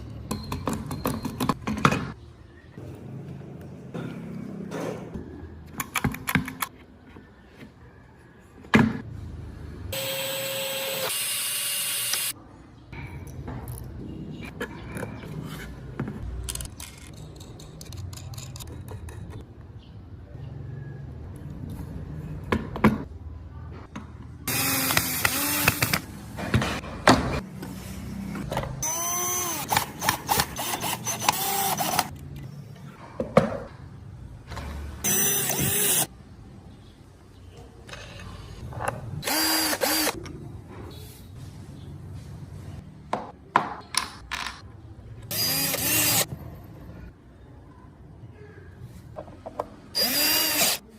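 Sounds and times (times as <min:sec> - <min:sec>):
power tool cutting wood: 0:39.3 - 0:40.2, 0:50.0 - 0:50.8.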